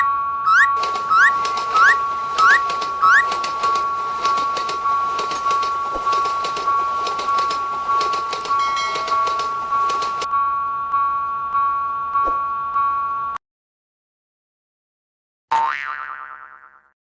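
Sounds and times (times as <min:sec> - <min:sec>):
rising whistle chirps: 0:00.0 - 0:03.3
railroad crossing bell: 0:00.0 - 0:13.4.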